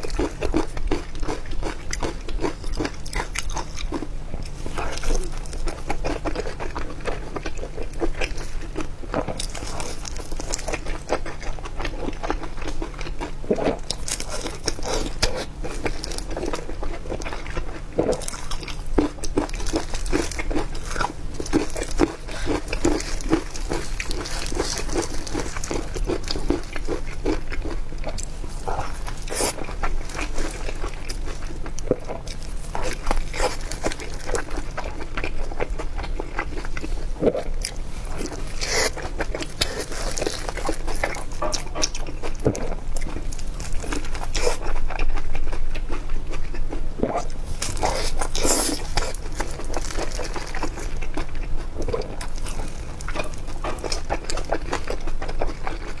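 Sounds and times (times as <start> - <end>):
crunchy chewing: 0.0 - 56.0
wet mouth sounds: 16.2 - 56.0.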